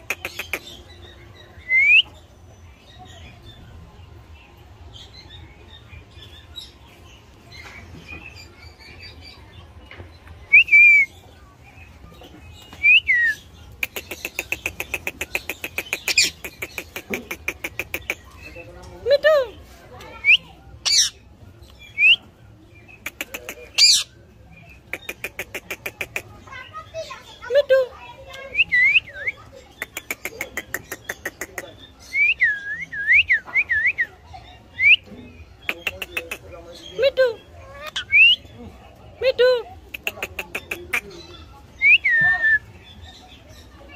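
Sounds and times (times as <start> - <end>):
parakeet calling: 13.7 - 18.5, 20.8 - 21.2, 22.9 - 24.1.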